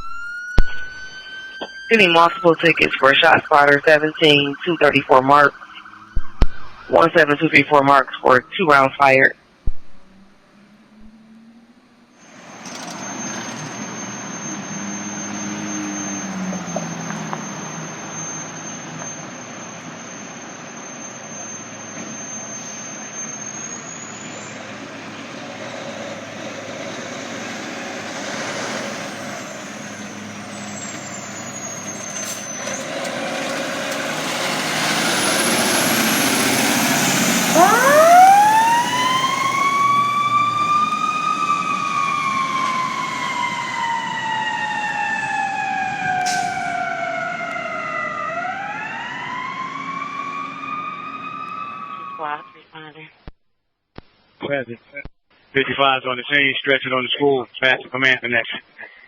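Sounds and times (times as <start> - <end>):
siren winding up: 0.0 - 8.7, 9.9 - 52.6
steady high whine: 0.0 - 23.3, 33.9 - 44.0
fire truck engine running: 0.0 - 52.4
road noise: 0.0 - 52.5.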